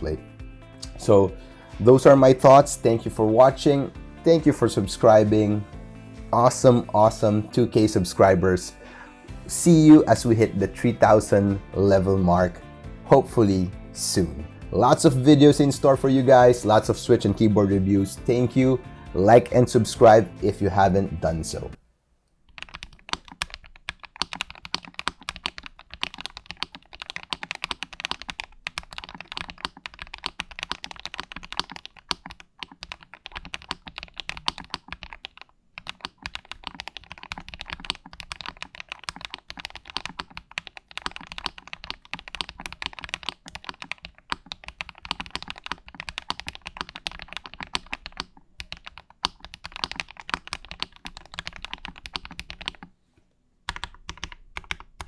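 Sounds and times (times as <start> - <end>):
mechanical keyboard typing: 22.5 - 52.9, 53.7 - 55.0.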